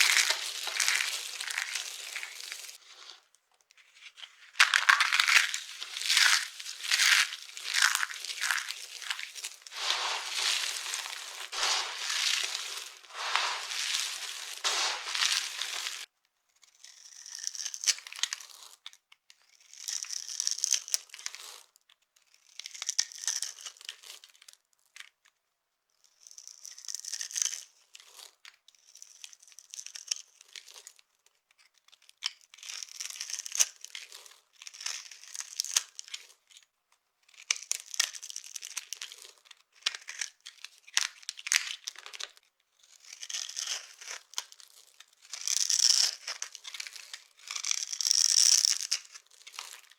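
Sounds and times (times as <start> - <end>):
dry blocks crunching: 0.0 - 2.7, 5.2 - 16.0.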